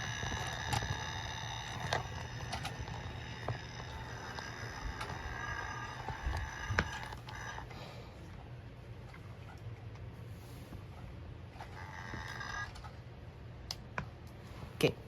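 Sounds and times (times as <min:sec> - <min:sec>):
wheels clicking on track: 0:00.0 - 0:07.7
toy train motor whine: 0:00.0 - 0:08.2, 0:11.5 - 0:13.1.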